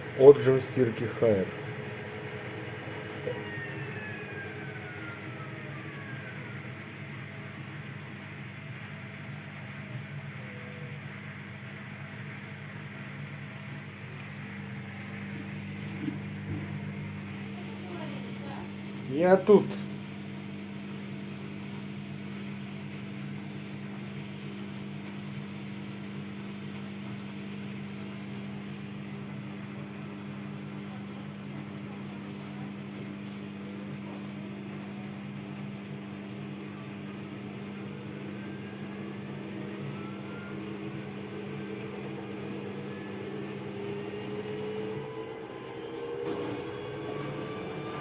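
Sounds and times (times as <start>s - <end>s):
rising spin whine: 0.0s - 9.1s, 35.6s - 48.0s
washing machine spin hum: 0.0s - 48.0s.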